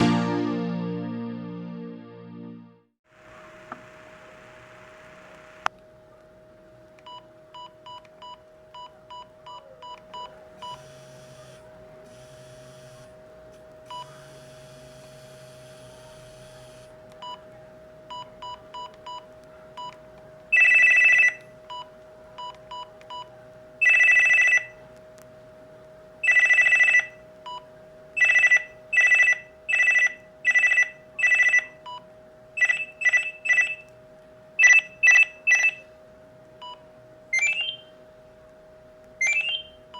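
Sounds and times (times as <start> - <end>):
phone key beeps: 18.1 - 24.7, 26.2 - 27.6, 28.2 - 32.0, 32.6 - 33.9, 34.6 - 35.9, 37.4 - 37.9, 39.2 - 39.8
electronic ringtone: 20.6 - 21.4, 23.8 - 24.7, 26.2 - 27.2, 28.2 - 31.8, 32.6 - 33.9, 34.6 - 35.9, 37.4 - 37.9, 39.2 - 39.8.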